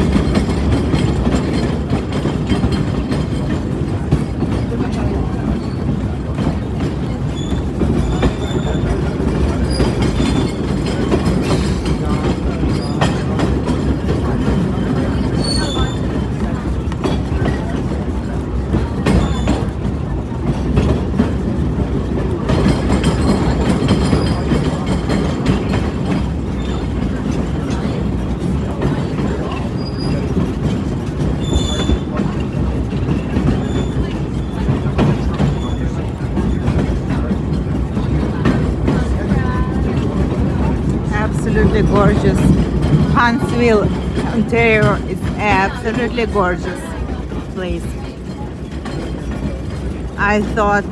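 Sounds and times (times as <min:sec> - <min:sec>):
train rumbling on rails: 0:00.0 - 0:50.9
wheels clacking over rail joints: 0:00.0 - 0:50.9
faint high wheel squeals: 0:07.1 - 0:17.7, 0:19.0 - 0:19.9, 0:29.3 - 0:37.2.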